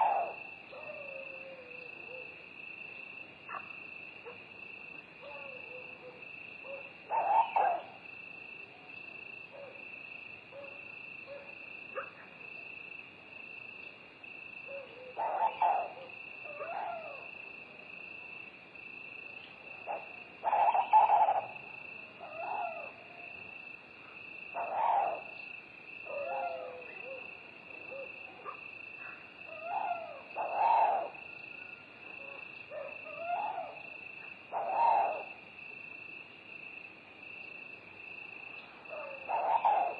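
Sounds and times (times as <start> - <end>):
owl hooting: 0.0 - 2.4, 5.2 - 8.0, 14.7 - 17.3, 19.8 - 23.0, 24.5 - 25.4, 26.0 - 35.4, 38.9 - 39.9
crickets chirping: 0.0 - 39.9
soft animal calls: 19.8 - 21.6, 26.0 - 35.4, 38.9 - 39.9.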